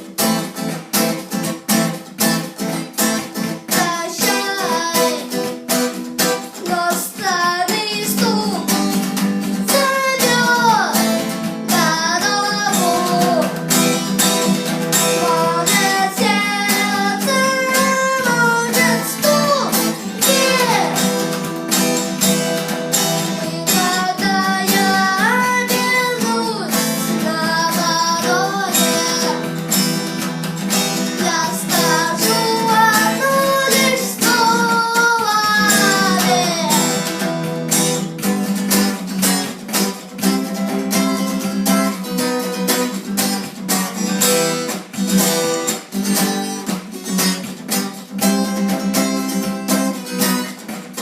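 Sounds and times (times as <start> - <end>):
acoustic guitar strumming: 0.0 - 51.0
person singing: 3.4 - 38.0.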